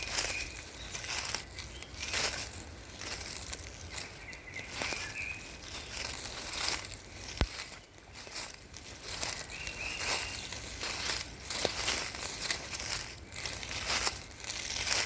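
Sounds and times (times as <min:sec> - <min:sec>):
footsteps in dry leaves: 0:00.0 - 0:15.0.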